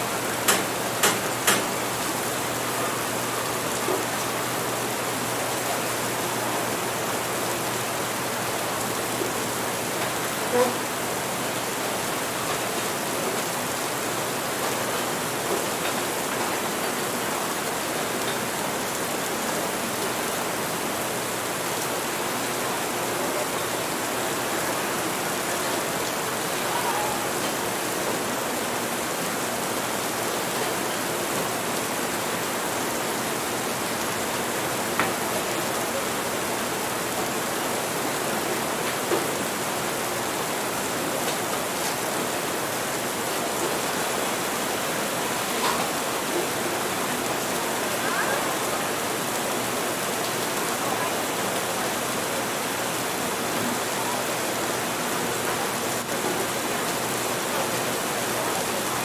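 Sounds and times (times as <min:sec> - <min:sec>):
steady rain hissing: 0:00.0 - 0:59.0.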